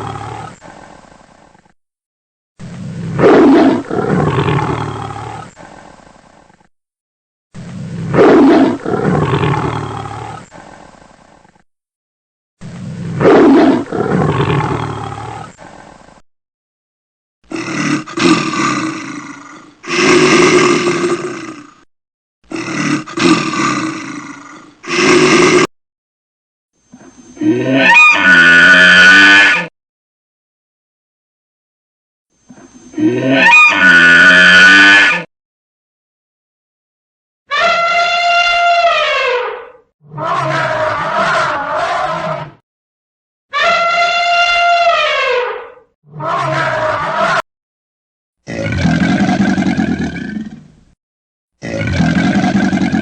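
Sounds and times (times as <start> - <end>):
big cat roaring: 0.0 - 1.0, 2.6 - 6.0, 7.6 - 11.0, 12.6 - 15.8, 17.5 - 21.9, 22.5 - 25.7, 40.0 - 42.6, 46.1 - 47.4, 48.4 - 50.7, 51.6 - 53.0.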